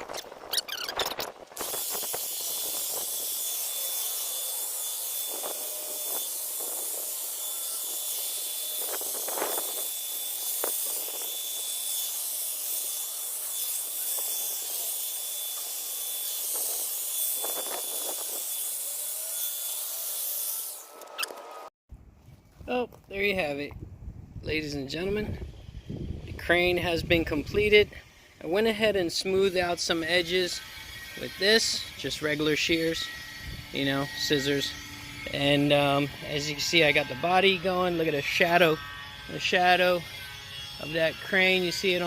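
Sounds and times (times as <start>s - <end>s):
electric hedge trimmer running: 1.6s - 21.7s, 30.2s - 42.0s.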